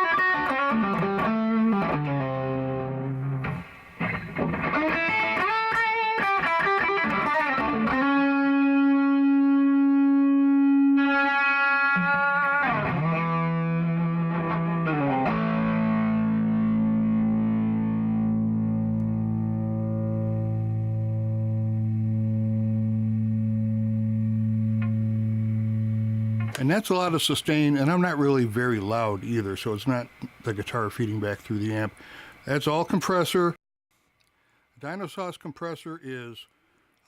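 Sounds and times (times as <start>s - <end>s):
overdriven electric guitar: 0.0s - 26.7s.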